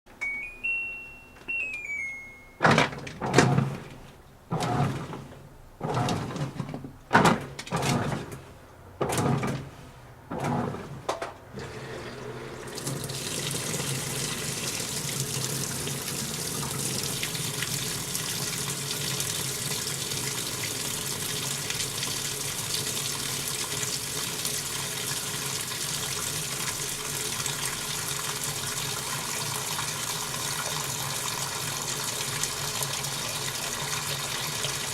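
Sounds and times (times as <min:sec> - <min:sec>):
electronic beep tune: 0:00.1 - 0:02.6.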